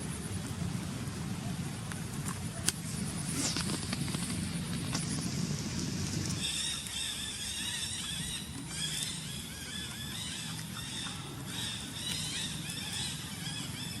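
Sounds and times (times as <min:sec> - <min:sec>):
low rumble: 0:00.0 - 0:14.0
high chirping animal calls: 0:06.3 - 0:14.0.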